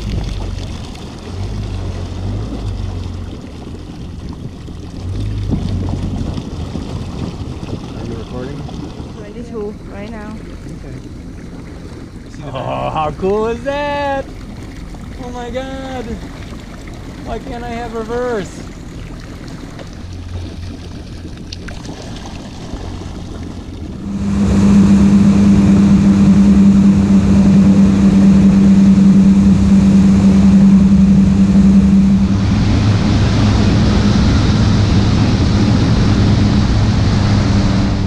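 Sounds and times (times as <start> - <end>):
wind noise: 0.0 - 10.7, 22.7 - 38.0
boat engine drone: 0.0 - 38.0
rushing water: 0.0 - 38.0.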